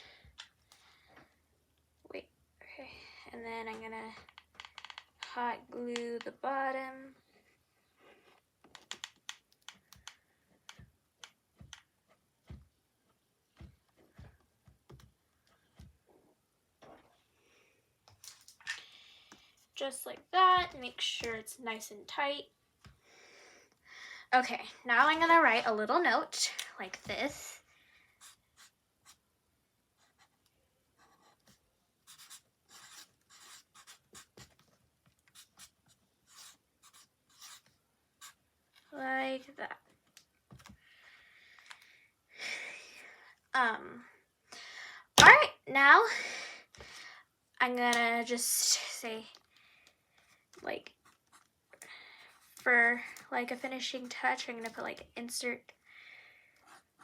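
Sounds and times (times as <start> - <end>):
handwriting on paper: 28.2 - 29.2, 31.0 - 34.6, 35.3 - 38.4.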